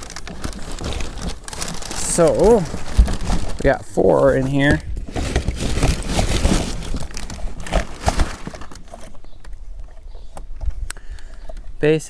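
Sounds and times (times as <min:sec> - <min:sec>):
clattering knocks of handled items: 0:00.0 - 0:09.6
packaging rustling: 0:00.0 - 0:10.2.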